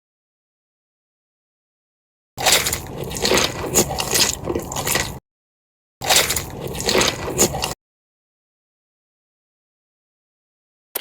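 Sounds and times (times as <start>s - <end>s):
food being chewed crunchily: 2.4s - 5.2s, 6.0s - 7.8s.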